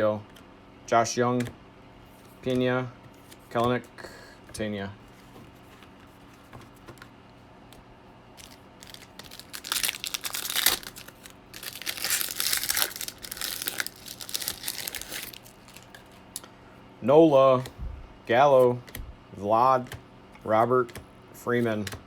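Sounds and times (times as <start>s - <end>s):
wrapper tearing and crinkling: 8.4s - 16.4s.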